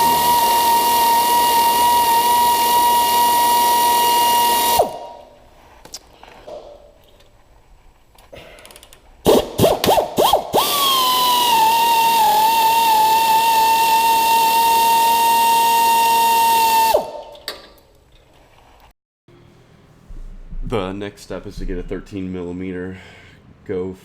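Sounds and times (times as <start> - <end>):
power drill whining: 0.0 - 5.1, 9.3 - 17.3.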